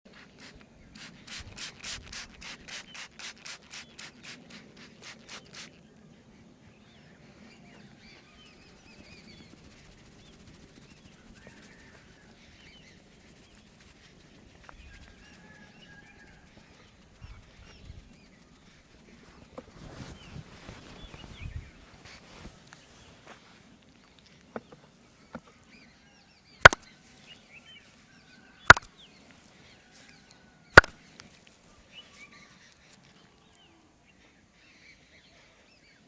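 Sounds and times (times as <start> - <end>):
faint bird chirps: 3.7 - 36.0
hands rubbing hair and scalp: 8.5 - 23.6.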